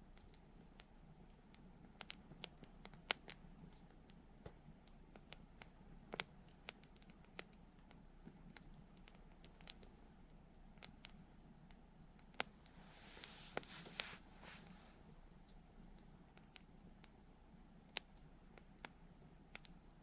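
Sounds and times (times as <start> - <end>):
low hiss of burning fire: 0.0 - 20.0
campfire crackling and popping: 0.1 - 12.7, 17.8 - 20.0.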